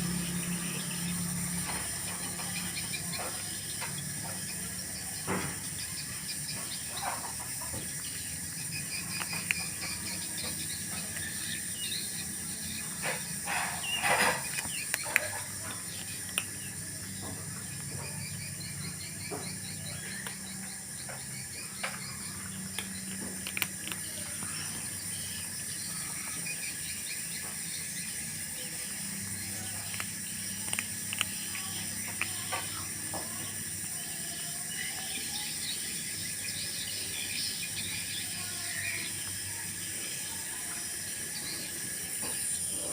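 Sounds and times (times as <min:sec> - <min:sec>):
scattered clicks: 0:08.8 - 0:12.0, 0:13.8 - 0:16.8, 0:21.8 - 0:24.4, 0:29.4 - 0:32.8.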